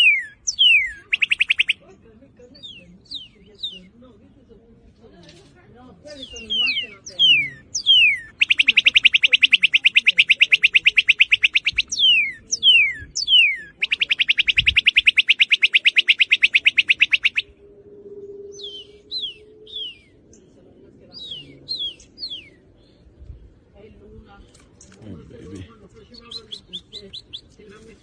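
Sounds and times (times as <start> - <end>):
bird down-slurred whistles: 0.0 - 1.8, 6.2 - 17.6, 18.2 - 20.2
bird singing rapid trills: 0.0 - 4.0, 6.1 - 17.6, 18.2 - 20.5.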